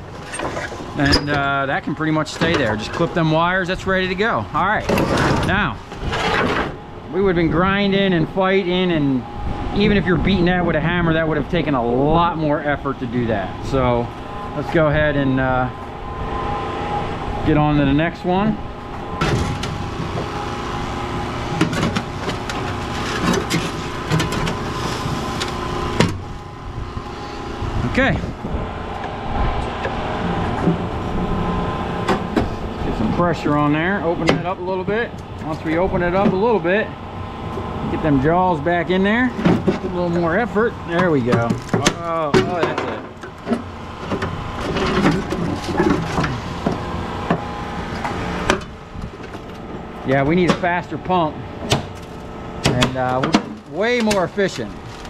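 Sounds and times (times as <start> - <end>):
hydraulic pump droning: 0.0 - 55.0
machine humming: 0.0 - 55.0
metal cracking and creaking: 21.3 - 26.4, 39.1 - 55.0.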